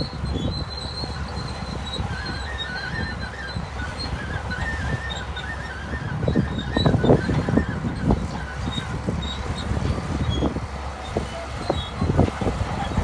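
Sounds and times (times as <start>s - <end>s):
heavy machinery engine rumble: 0.0s - 13.0s.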